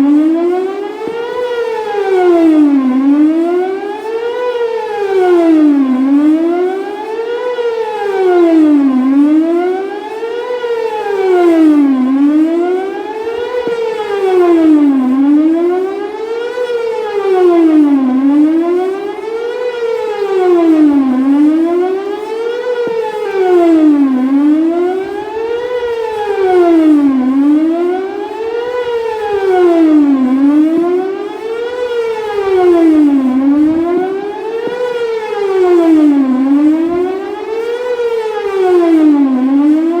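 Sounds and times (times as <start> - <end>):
warning siren wailing: 0.0 - 40.0.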